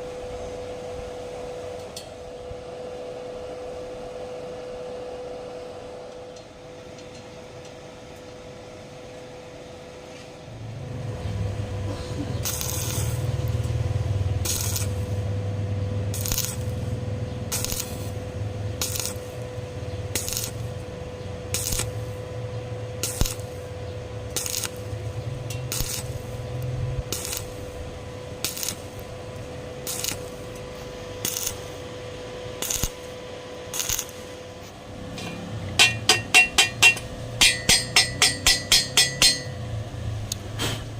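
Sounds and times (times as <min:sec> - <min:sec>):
steady low hum: 0:00.0 - 0:40.9
sharp metallic clinks: 0:35.2 - 0:39.8.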